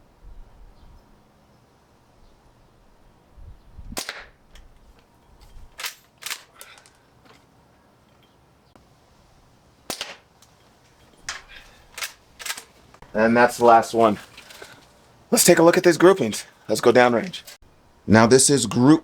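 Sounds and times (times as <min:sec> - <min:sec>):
air rifle shot crack: 0:03.9 - 0:04.4, 0:09.9 - 0:10.2
rifle lever clicks: 0:05.8 - 0:07.0, 0:11.3 - 0:12.7.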